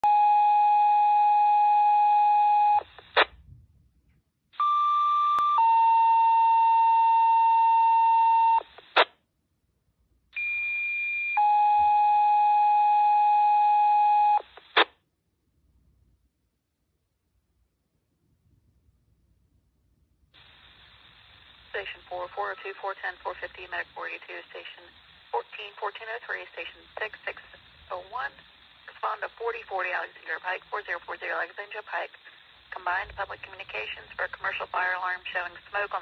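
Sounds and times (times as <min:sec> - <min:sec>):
two-tone radio paging tones: 0:00.0 - 0:03.3, 0:04.6 - 0:09.1
radio squelch burst: 0:02.8 - 0:03.4, 0:08.4 - 0:09.1, 0:20.4 - 0:36.0.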